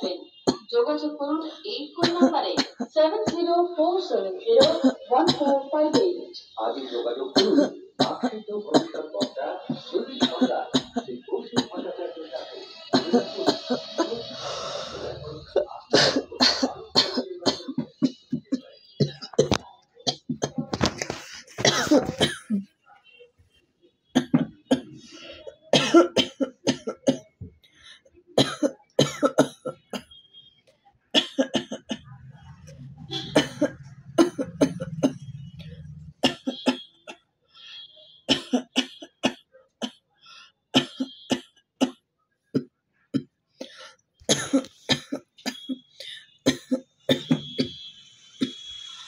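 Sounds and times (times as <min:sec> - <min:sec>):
person coughing: 0:02.0 - 0:03.5, 0:04.6 - 0:06.2, 0:07.4 - 0:09.4, 0:10.2 - 0:11.9, 0:13.0 - 0:22.6, 0:24.2 - 0:27.4, 0:28.4 - 0:30.1, 0:31.2 - 0:37.2, 0:38.3 - 0:40.0, 0:42.6 - 0:47.8
wheezy breath in: 0:14.3 - 0:15.2.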